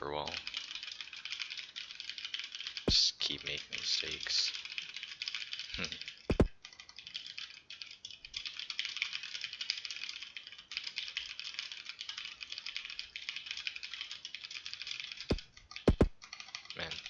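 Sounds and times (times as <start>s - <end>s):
fast typing on keyboard: 0.4s - 3.0s, 3.6s - 17.0s.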